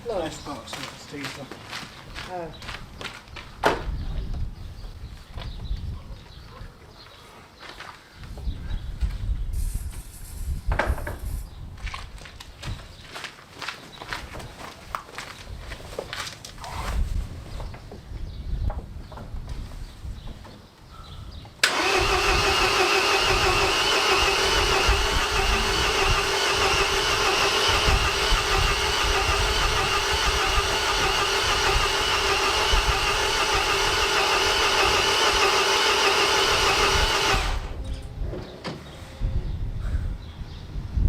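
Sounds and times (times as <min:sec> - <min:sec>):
starter motor cranking engine: 0:21.6 - 0:37.8.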